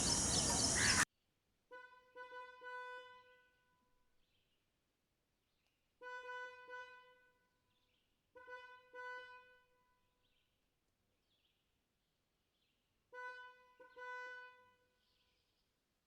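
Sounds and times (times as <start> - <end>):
bird honking call: 0.0 - 1.0.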